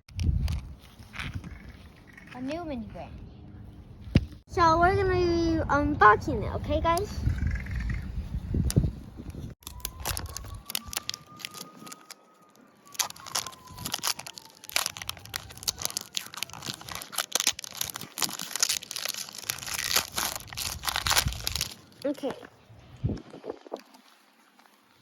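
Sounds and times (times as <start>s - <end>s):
plastic wrapping crinkling and tearing: 9.6s - 22.4s.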